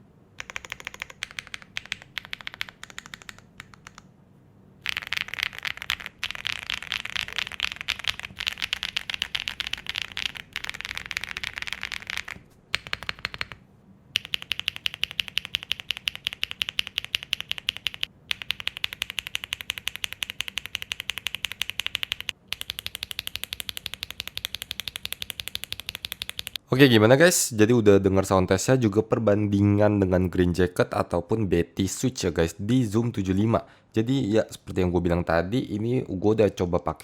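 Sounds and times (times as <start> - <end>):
typing on mechanical keyboard: 0.4 - 4.0, 4.8 - 13.6, 14.2 - 26.6.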